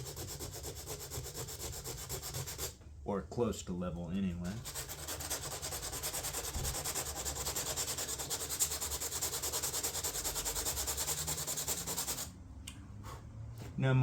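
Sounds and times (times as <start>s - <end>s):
sandpaper rubbing on fiberglass: 0.0s - 2.8s, 4.3s - 12.3s.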